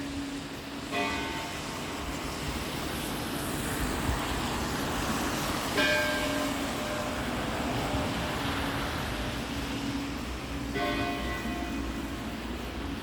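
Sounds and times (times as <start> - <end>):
rushing background noise: 0.0 - 13.0
church bell tolling: 0.9 - 1.6, 5.8 - 7.3, 10.7 - 11.8.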